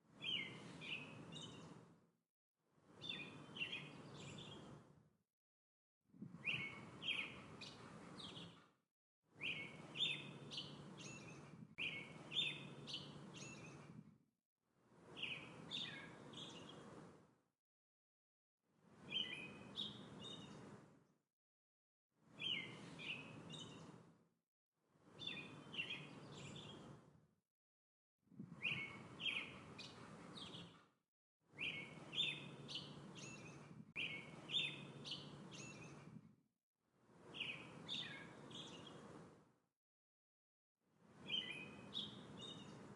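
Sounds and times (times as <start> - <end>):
faint outdoor background: 0.0 - 5.2, 6.1 - 17.5, 18.7 - 21.2, 22.2 - 27.4, 28.3 - 39.7, 40.8 - 42.9
songbirds chirping and twittering: 0.1 - 2.0, 2.8 - 5.0, 6.2 - 8.7, 9.3 - 14.1, 14.9 - 17.3, 18.8 - 21.0, 22.2 - 24.1, 25.0 - 27.2, 28.4 - 30.9, 31.5 - 36.2, 37.1 - 39.4, 41.0 - 42.9.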